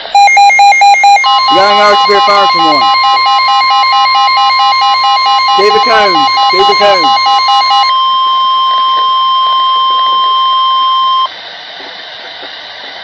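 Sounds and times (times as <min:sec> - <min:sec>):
steady alert tone: 0:00.0 - 0:11.3
radio hiss: 0:08.6 - 0:11.2.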